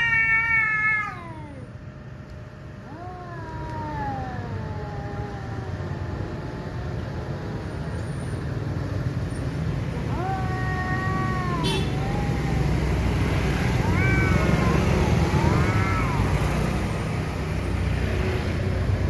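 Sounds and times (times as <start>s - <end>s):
cats yowling: 0.0s - 1.8s, 2.8s - 7.1s, 10.0s - 17.4s.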